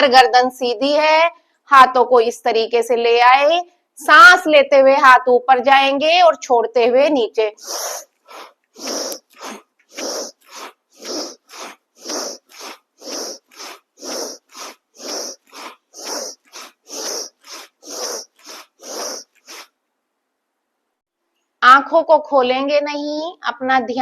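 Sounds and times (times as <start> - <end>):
woman breathing forcefully through nose: 7.6 - 19.8.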